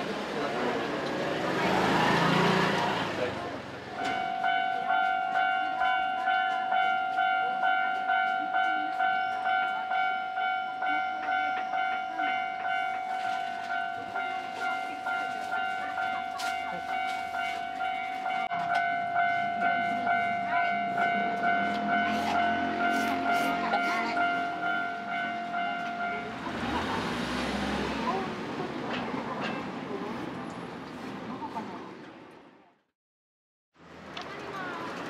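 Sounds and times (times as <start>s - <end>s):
low rumble of train: 0.0s - 32.8s, 33.8s - 35.0s
level crossing warning bell: 1.8s - 28.3s.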